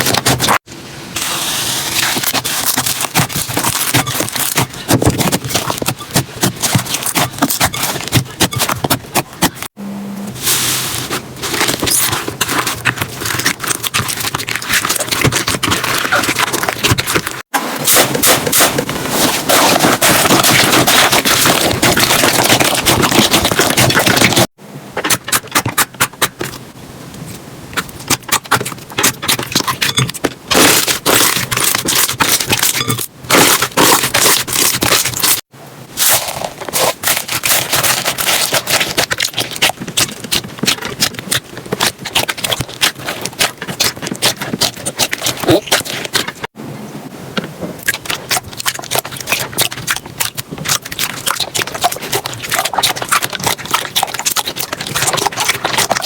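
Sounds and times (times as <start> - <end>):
slime crackling and popping: 27.8 - 35.4, 36.0 - 46.5, 47.8 - 56.0.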